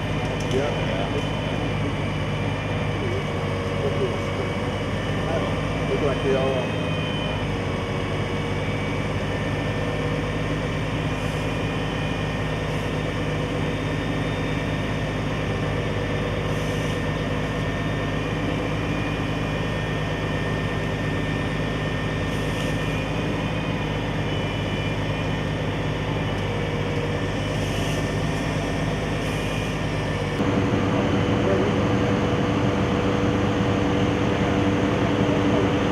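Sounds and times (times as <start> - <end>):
large engine humming: 0.0 - 35.9.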